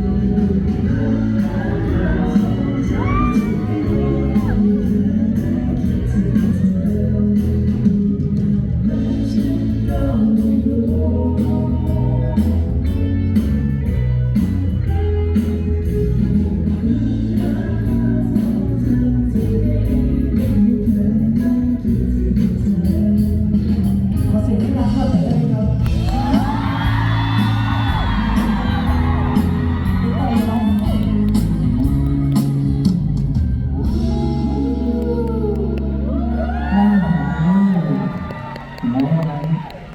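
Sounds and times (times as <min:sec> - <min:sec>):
person singing: 0:00.0 - 0:13.6, 0:16.2 - 0:39.5
live band music: 0:00.0 - 0:36.6
bass: 0:00.0 - 0:39.9
guitar: 0:00.0 - 0:39.9
fans shrieking and whooping: 0:02.0 - 0:05.1, 0:25.9 - 0:39.9
steady drum beat: 0:20.9 - 0:34.7.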